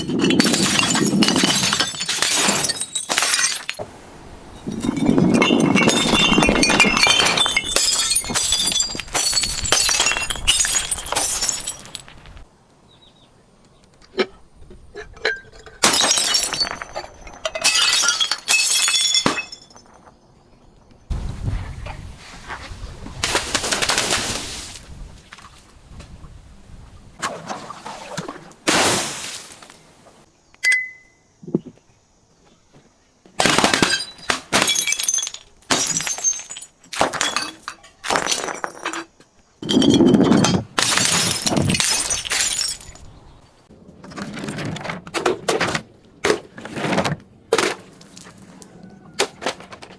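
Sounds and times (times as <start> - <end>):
glass shattering and crunching: 0.0 - 3.8, 4.7 - 12.5, 15.2 - 20.1, 33.4 - 39.0, 39.6 - 43.4
glass clinks: 4.7 - 12.4, 30.6 - 31.2.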